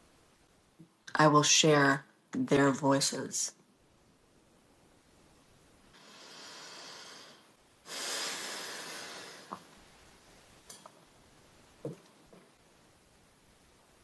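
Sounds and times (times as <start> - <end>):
person breathing: 5.9 - 9.7.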